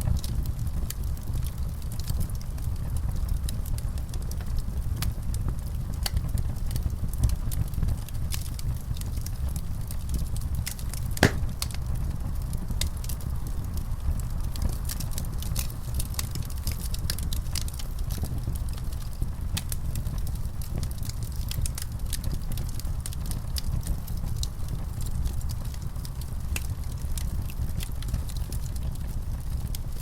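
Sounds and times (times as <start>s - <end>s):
low rumble of flames: 0.0s - 30.0s
wood fire crackling: 3.2s - 30.0s
loud pop of fire: 11.2s - 11.8s.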